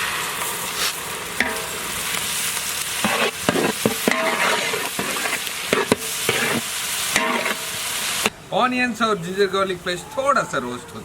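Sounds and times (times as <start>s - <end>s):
onions sizzling in oil: 0.0s - 8.4s
spatula scraping and clinking on pan: 1.4s - 2.2s, 3.0s - 7.9s.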